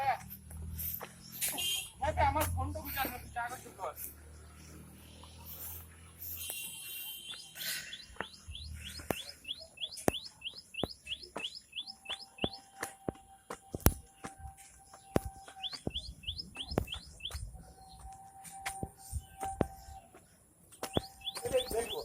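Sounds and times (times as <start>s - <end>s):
bird chirping: 4.1s - 12.8s, 14.1s - 22.0s.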